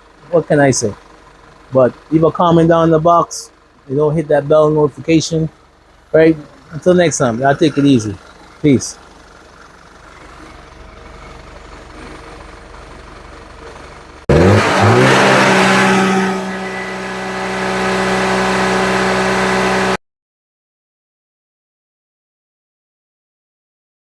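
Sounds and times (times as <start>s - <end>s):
car engine revving: 13.6s - 20.0s.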